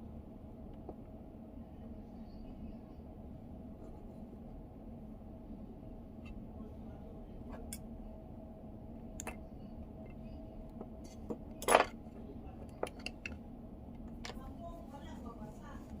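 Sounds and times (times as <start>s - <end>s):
parts clattering: 11.1s - 12.0s.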